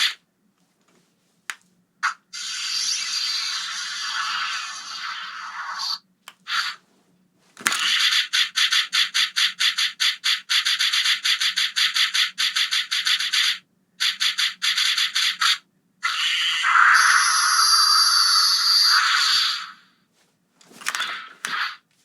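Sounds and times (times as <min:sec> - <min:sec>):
hissing pulses from toy speaker: 0:02.0 - 0:06.8, 0:12.4 - 0:19.8.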